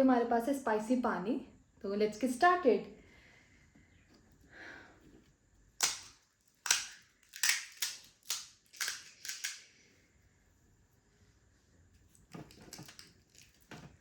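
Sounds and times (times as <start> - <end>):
fried puri shells cracking: 5.7 - 9.8.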